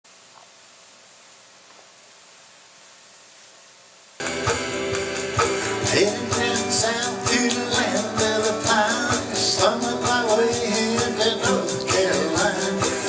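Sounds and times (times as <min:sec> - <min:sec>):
faint hiss: 0:00.0 - 0:04.2
electronic drum beat: 0:04.2 - 0:13.0
guitar playing: 0:04.2 - 0:13.0.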